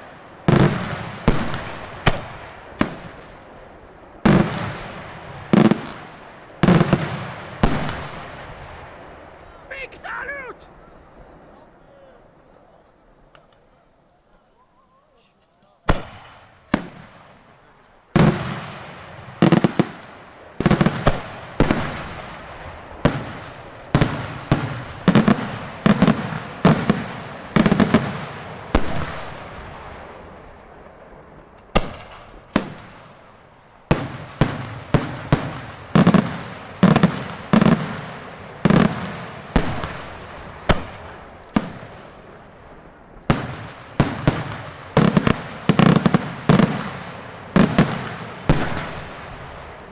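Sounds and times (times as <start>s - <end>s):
fireworks bangs echoing: 0.0s - 13.8s, 15.8s - 49.9s.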